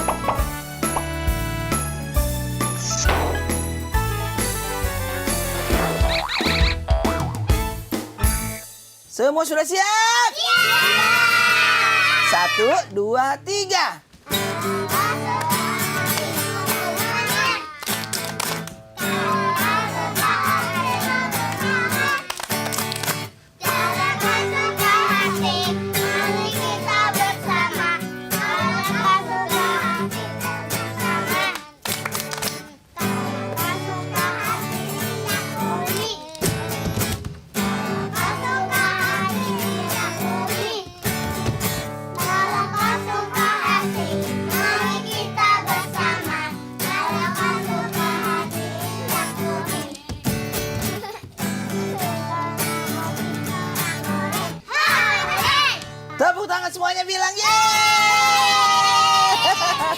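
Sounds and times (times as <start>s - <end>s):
strummed accompaniment: 0.0s - 9.0s, 14.3s - 56.1s
instrumental backing music: 0.0s - 9.1s
children singing: 14.3s - 17.8s, 19.0s - 22.3s, 23.6s - 31.6s, 33.0s - 36.8s, 37.6s - 50.6s, 51.9s - 55.7s.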